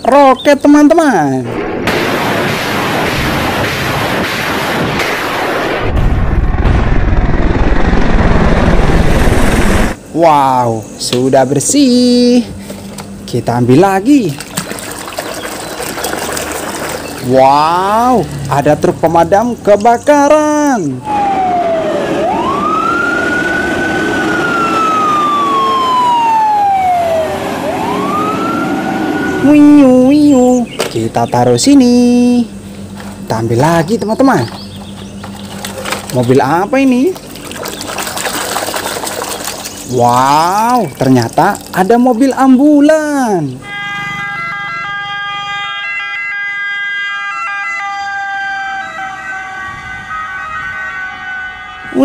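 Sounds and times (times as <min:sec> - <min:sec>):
steady rushing noise: 0:01.4 - 0:10.1
fire engine siren wailing: 0:20.9 - 0:30.4, 0:43.6 - 0:52.0.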